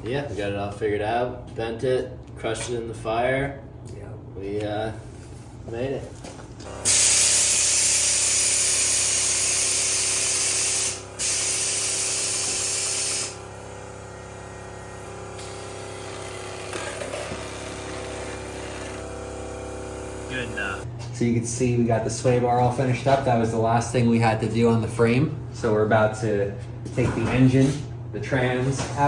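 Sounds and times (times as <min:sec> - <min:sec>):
loud spraying hiss: 0:06.8 - 0:13.4.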